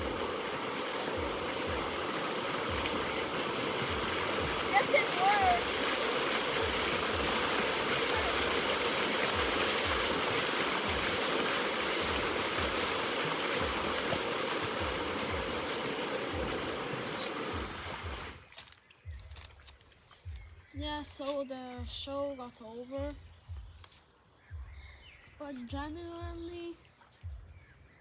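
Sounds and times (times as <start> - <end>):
fountain water splashing: 0.0 - 18.5.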